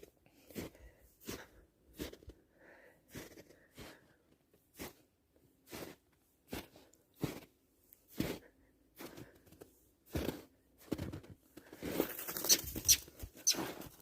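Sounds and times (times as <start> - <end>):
footsteps crunching in snow: 4.7 - 8.4, 9.0 - 14.0.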